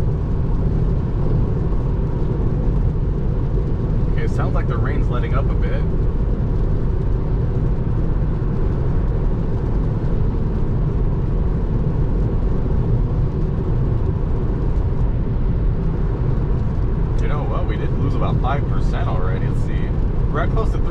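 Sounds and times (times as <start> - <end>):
road and tyre rumble: 0.0 - 20.9.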